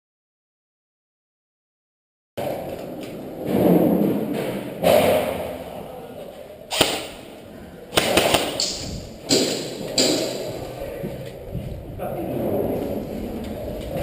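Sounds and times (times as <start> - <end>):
airsoft guns firing: 6.7 - 10.5.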